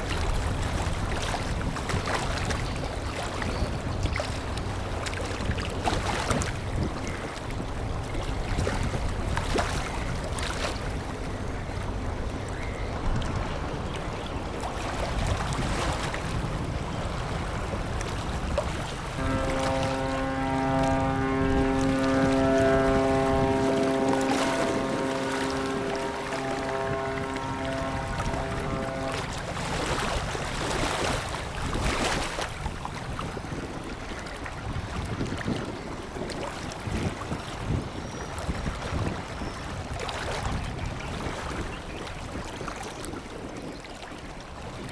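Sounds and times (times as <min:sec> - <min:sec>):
sea water sloshing: 0:00.0 - 0:37.6
boat engine rumble: 0:00.0 - 0:44.9
wind on microphone: 0:00.0 - 0:44.9
small splashes: 0:13.4 - 0:33.4
steady engine drone: 0:18.9 - 0:30.3.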